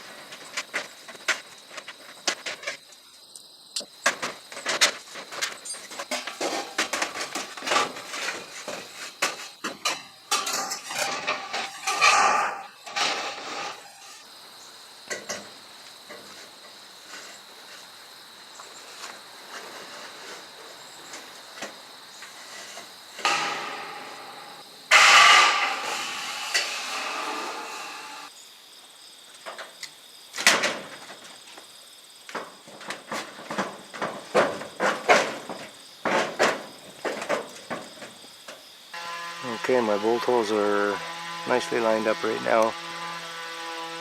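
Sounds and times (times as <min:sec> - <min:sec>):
crickets chirping: 0:00.0 - 0:43.9
sheet-steel panels clattering: 0:04.0 - 0:14.2, 0:22.6 - 0:28.3, 0:32.3 - 0:38.2.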